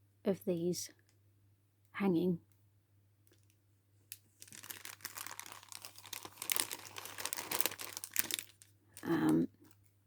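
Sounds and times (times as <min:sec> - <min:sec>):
plastic packaging crinkling: 0:03.3 - 0:09.8.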